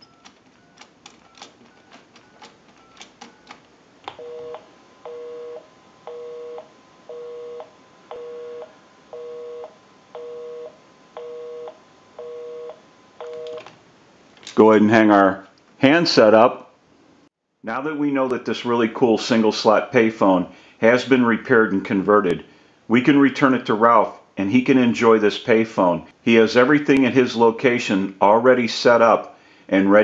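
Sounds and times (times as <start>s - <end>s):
payphone dialing clicks and beeps: 0.0s - 5.2s, 13.2s - 13.7s.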